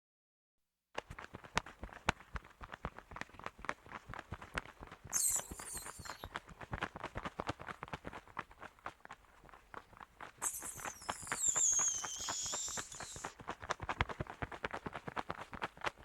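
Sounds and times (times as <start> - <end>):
rapid wing flaps: 1.0 - 16.0
high-pitched bat squeal: 5.2 - 6.3, 10.4 - 13.3.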